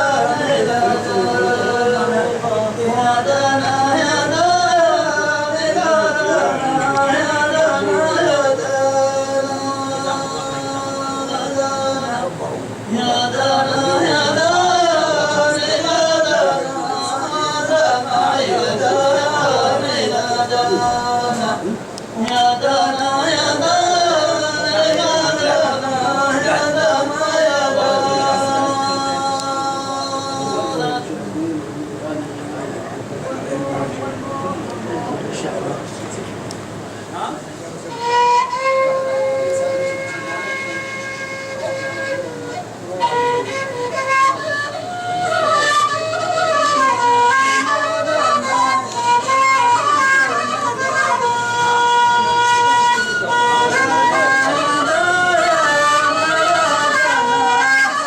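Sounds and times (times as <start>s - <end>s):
man singing: 0.0s - 31.4s, 51.2s - 58.0s
steady held drone tone: 0.0s - 58.0s.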